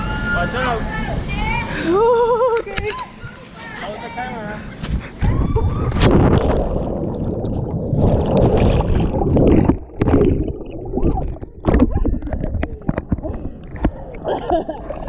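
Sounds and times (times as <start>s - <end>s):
water gurgling: 5.2s - 15.0s
water rushing and splashing: 5.9s - 15.0s.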